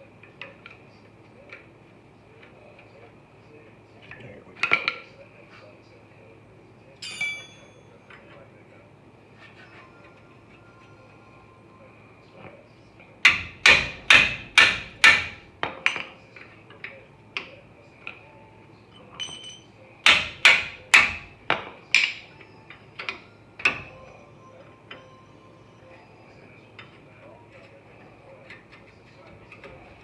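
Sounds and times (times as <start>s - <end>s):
hammer striking metal: 7.0s - 7.9s, 13.3s - 16.1s, 19.2s - 22.2s.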